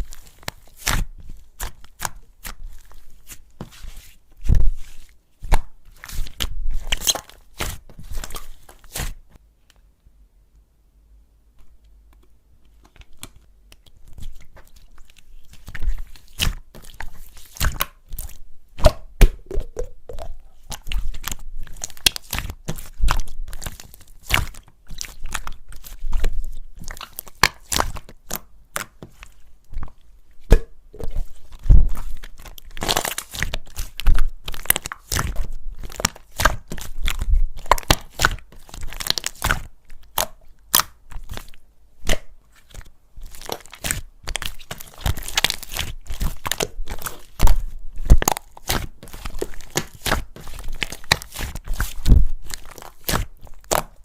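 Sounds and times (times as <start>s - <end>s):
slime squeezed by hand: 15.4s - 28.1s.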